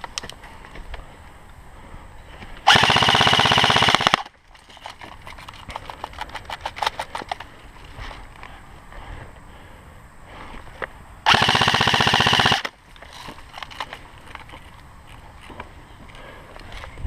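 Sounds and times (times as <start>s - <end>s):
airsoft rifle full auto burst: 2.7s - 4.3s, 11.3s - 12.8s
single airsoft shots: 11.3s - 12.7s.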